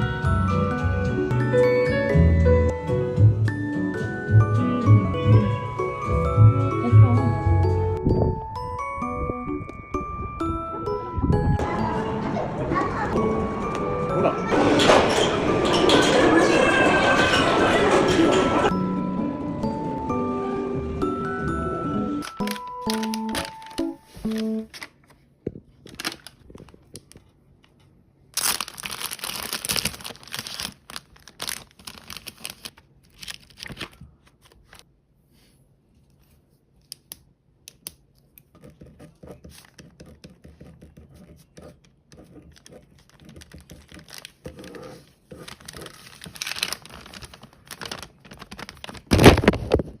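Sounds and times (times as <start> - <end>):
rustling and crinkling: 22.2 - 34.8, 42.3 - 50.0.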